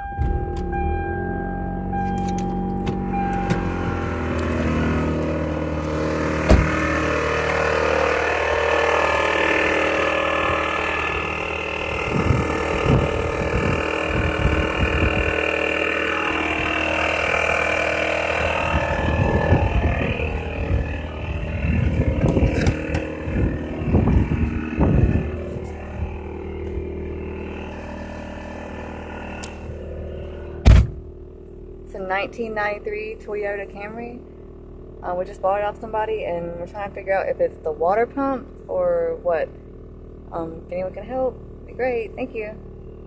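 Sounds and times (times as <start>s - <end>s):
steady tone: 0.0s - 33.8s
car engine running: 0.0s - 43.0s.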